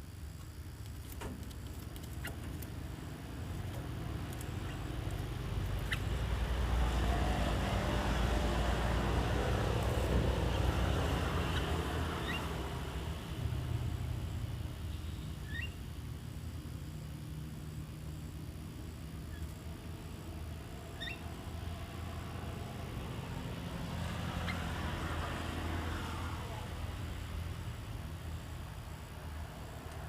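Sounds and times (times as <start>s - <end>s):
vehicle passing by: 2.8s - 14.8s, 19.8s - 30.0s
bird chirps: 3.6s - 6.6s, 10.3s - 12.8s, 14.8s - 15.9s, 20.9s - 21.4s.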